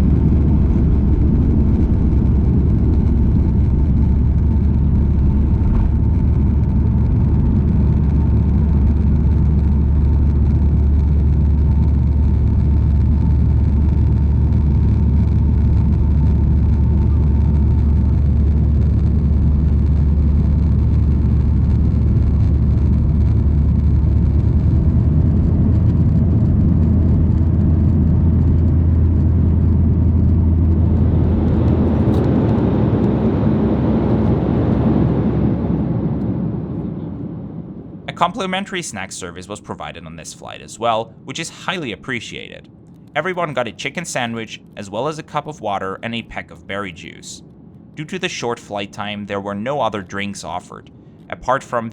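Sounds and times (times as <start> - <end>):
broad rushing noise: 0.0 - 51.9
faint whine: 0.0 - 51.9
jet engine cabin rumble: 0.0 - 51.9.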